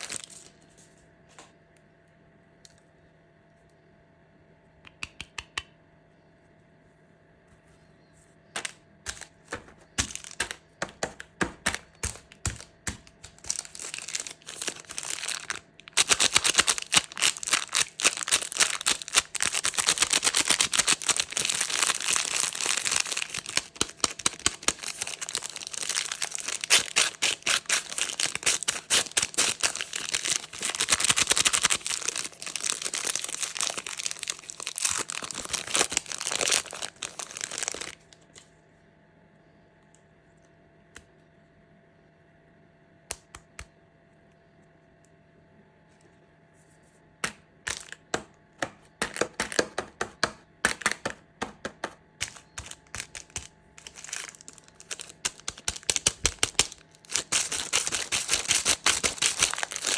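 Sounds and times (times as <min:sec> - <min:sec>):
candy wrapper crinkling: 0:00.0 - 0:00.6, 0:08.6 - 0:38.4, 0:47.7 - 0:48.1, 0:49.0 - 0:49.8, 0:52.2 - 0:59.9.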